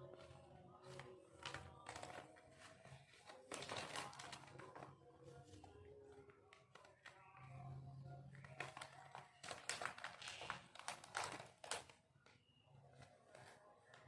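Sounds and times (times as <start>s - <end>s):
food wrapping crinkling: 8.4s - 12.0s.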